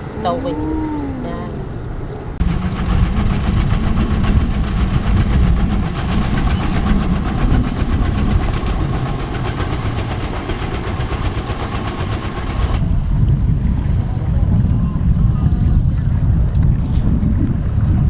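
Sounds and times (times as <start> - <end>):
small engine running: 2.4 - 12.9.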